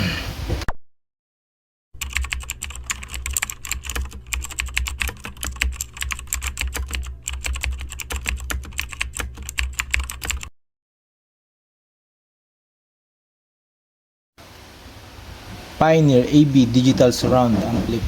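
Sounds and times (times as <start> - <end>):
rapid clicking and crackling: 2.0 - 10.5.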